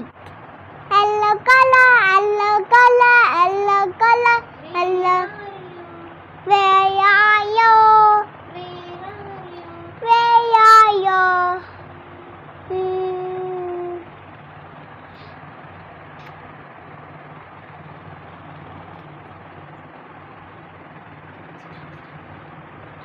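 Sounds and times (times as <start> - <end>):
faint low hum: 0.0 - 23.0
child singing: 0.9 - 11.7, 12.7 - 14.0.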